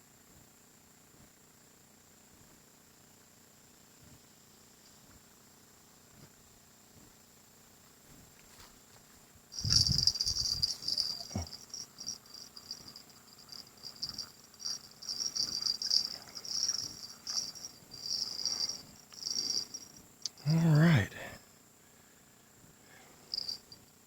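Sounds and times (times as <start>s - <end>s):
insects buzzing: 8.5s - 21.6s, 22.9s - 24.0s
low thumps: 9.6s - 12.8s.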